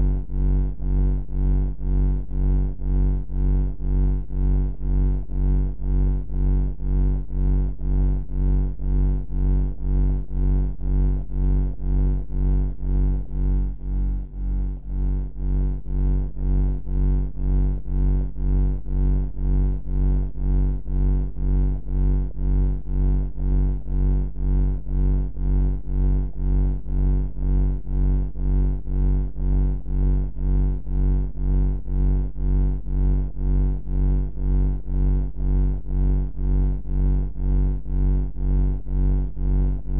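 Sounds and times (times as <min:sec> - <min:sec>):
deep throbbing ambient hum: 0:00.0 - 0:39.9.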